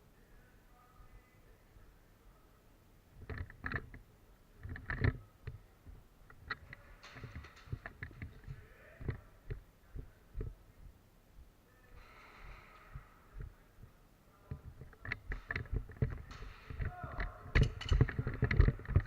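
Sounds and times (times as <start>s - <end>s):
knocks and thumps: 6.3s - 10.6s, 14.5s - 19.0s.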